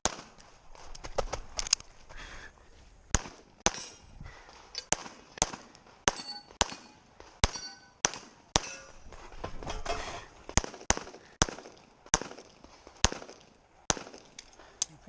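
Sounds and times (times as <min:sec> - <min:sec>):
pistol shots: 0:03.1 - 0:04.0, 0:04.9 - 0:08.8, 0:10.5 - 0:14.3
steel targets clanging: 0:06.1 - 0:08.0, 0:08.6 - 0:09.1.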